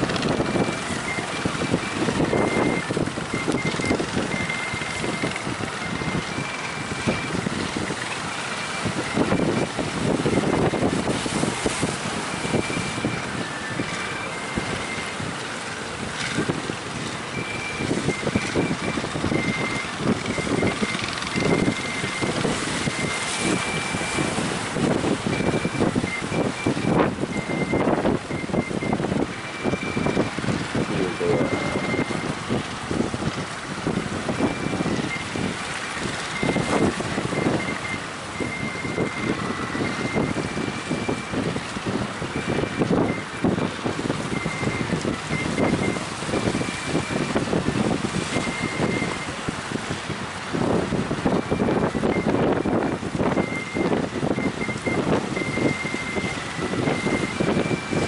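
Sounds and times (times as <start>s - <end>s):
wind buffeting microphone: 0.0s - 58.0s
faint high thin tone: 31.0s - 32.0s.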